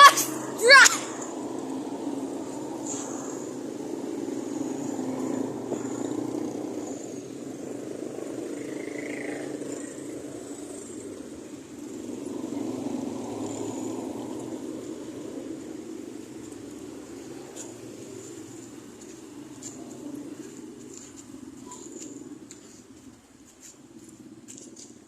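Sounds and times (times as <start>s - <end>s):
road traffic rumble: 0.0s - 25.0s
vehicles passing: 0.0s - 25.0s.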